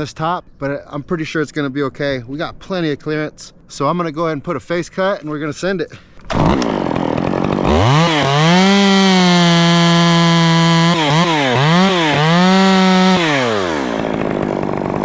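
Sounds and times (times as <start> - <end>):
chainsaw revving: 6.2 - 15.0.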